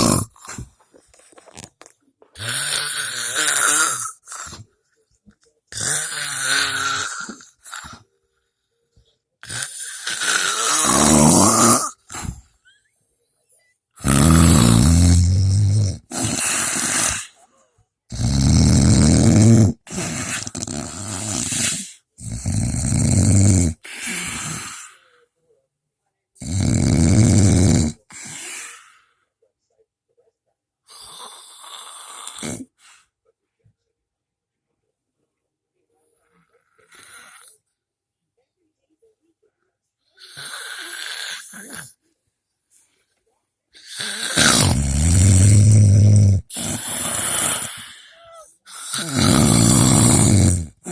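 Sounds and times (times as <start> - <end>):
loud snoring: 0.0 - 0.8, 2.4 - 4.7, 5.7 - 8.0, 9.4 - 12.4, 14.0 - 17.4, 18.1 - 25.0, 26.4 - 28.8, 30.9 - 32.8, 36.8 - 37.6, 40.2 - 41.9, 43.8 - 50.9.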